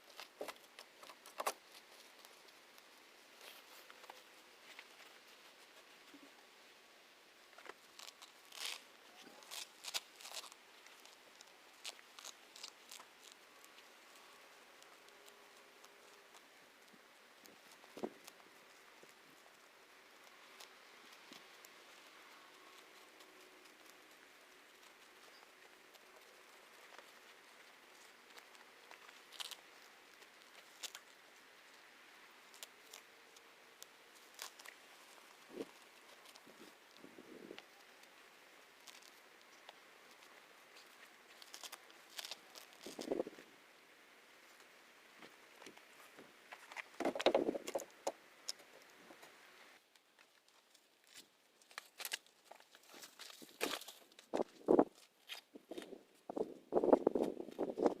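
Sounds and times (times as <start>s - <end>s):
weeds being pulled by hand: 7.6s - 31.2s
dry weeds snapping: 9.4s - 13.4s, 41.3s - 43.3s, 51.0s - 55.8s.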